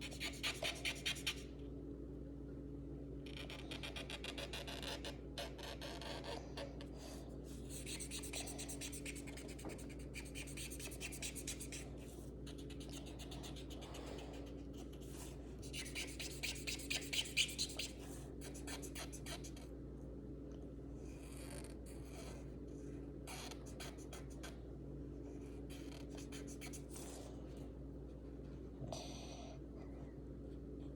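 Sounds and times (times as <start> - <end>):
scribbling on paper: 0.0 - 1.5, 3.7 - 19.6, 23.3 - 24.5, 25.7 - 27.2.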